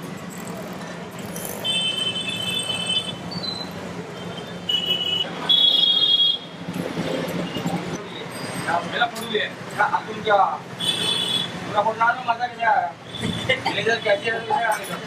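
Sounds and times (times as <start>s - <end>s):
street traffic noise: 0.0s - 15.0s
vehicle horns honking: 4.2s - 6.6s, 10.8s - 11.6s.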